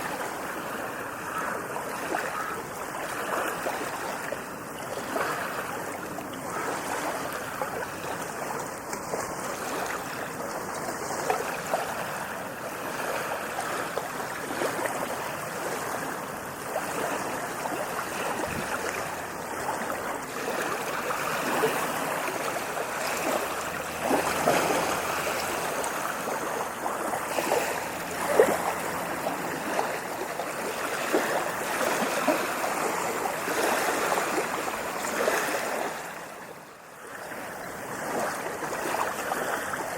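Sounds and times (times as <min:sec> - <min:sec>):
ocean surf washing in: 0:11.1 - 0:36.6.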